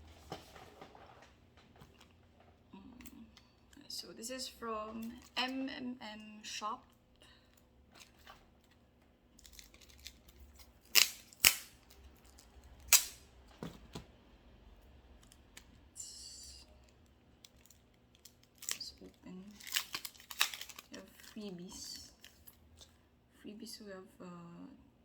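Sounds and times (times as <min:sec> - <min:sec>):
scissors snipping: 0:09.4 - 0:12.0, 0:12.8 - 0:13.2.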